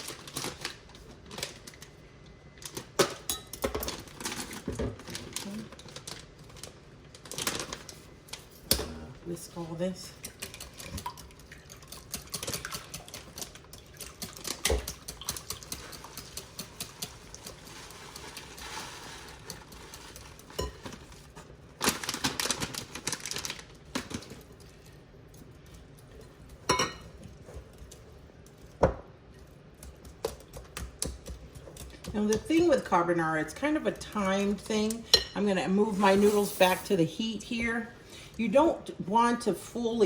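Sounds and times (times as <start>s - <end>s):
whisk beating in a bowl: 10.0s - 21.2s, 28.7s - 35.4s.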